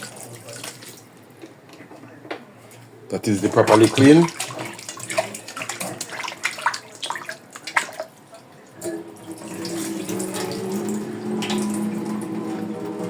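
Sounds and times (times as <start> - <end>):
tap water running into sink: 0.0 - 1.0, 3.3 - 8.1, 8.8 - 13.0
splashing: 0.0 - 1.1, 3.3 - 12.7.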